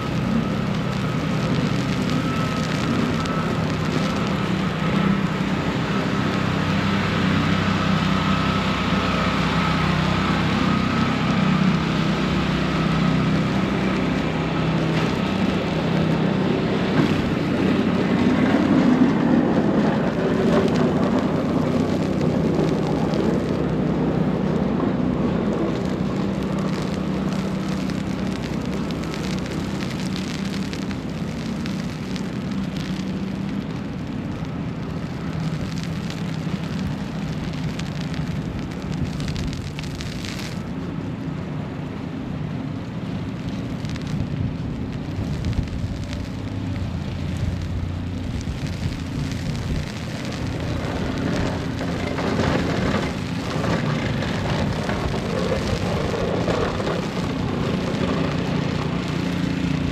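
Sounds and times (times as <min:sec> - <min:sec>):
constant hiss: 0:00.0 - 0:59.9
faint high whine: 0:00.0 - 0:59.9
vehicle engine hum: 0:00.0 - 0:59.9.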